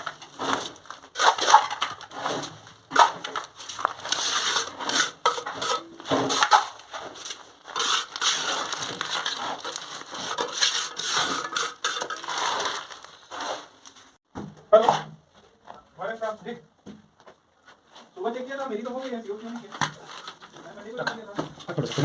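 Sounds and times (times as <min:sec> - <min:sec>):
trowel scraping cement and rubble: 0:00.0 - 0:14.2.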